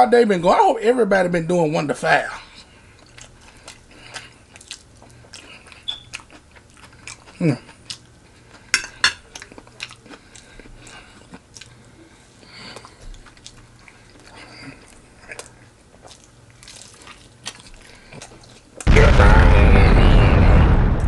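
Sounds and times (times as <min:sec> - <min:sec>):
chewing crispy fried chicken: 0:02.4 - 0:18.9.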